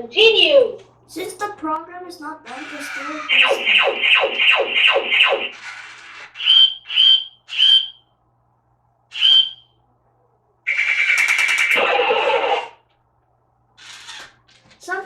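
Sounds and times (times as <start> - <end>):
buzzing electronic sound: 3.0 - 5.6
toy robot whistle-like chirps: 3.0 - 5.7, 6.3 - 8.0, 9.1 - 9.7, 10.7 - 12.7.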